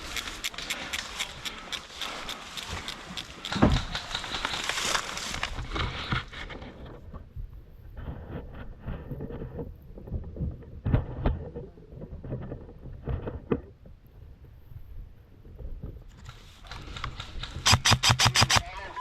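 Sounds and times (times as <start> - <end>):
sharp clicks: 0.0 - 5.1, 16.8 - 18.8
rustling handling noise: 0.0 - 7.0.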